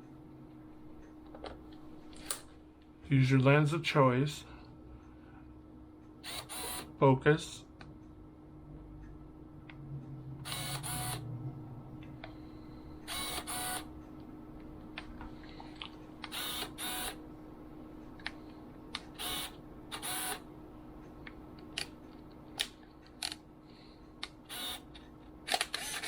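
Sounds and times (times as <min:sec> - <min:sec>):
lens autofocus motor whirring: 0:06.2 - 0:06.9, 0:10.4 - 0:11.3, 0:13.0 - 0:14.0, 0:16.2 - 0:17.2, 0:19.0 - 0:20.5, 0:24.2 - 0:26.0.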